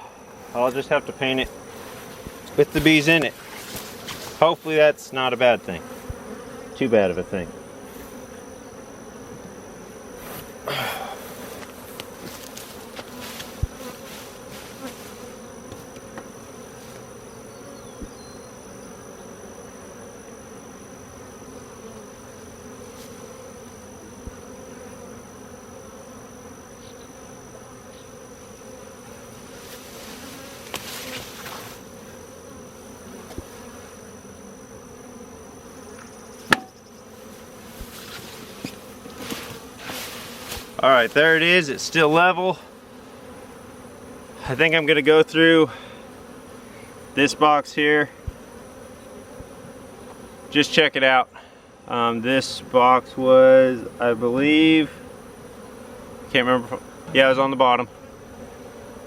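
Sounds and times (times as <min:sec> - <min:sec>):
honeybees buzzing: 0:00.0 - 0:59.0
knocks of hive boxes: 0:00.3 - 0:04.8, 0:05.8 - 0:06.7, 0:09.2 - 0:18.4, 0:29.7 - 0:34.2, 0:35.8 - 0:42.4, 0:48.2 - 0:50.8.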